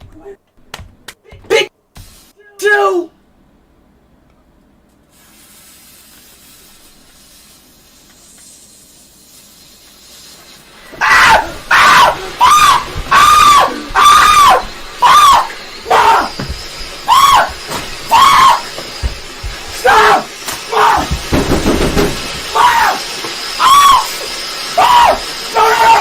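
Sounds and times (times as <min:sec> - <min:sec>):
faint steady hiss: 0:01.9 - 0:11.7
person screaming: 0:11.0 - 0:16.4, 0:17.0 - 0:18.7, 0:19.8 - 0:21.2, 0:22.5 - 0:24.2, 0:24.8 - 0:26.0.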